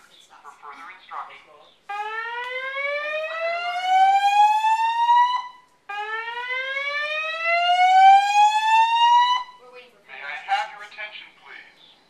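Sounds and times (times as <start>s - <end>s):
slow-whoop alarm tone: 1.9s - 9.6s.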